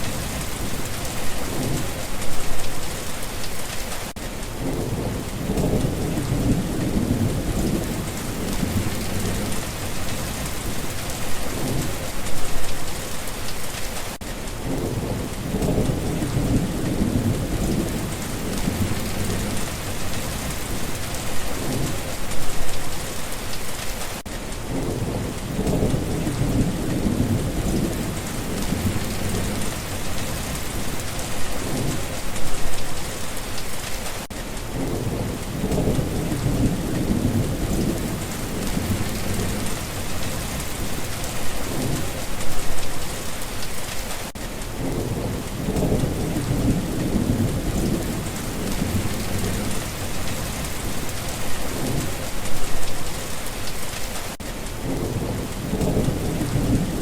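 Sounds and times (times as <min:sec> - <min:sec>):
heavy rain hissing: 0:00.0 - 0:57.0
thunder rolling: 0:24.7 - 0:32.4, 0:44.7 - 0:52.8.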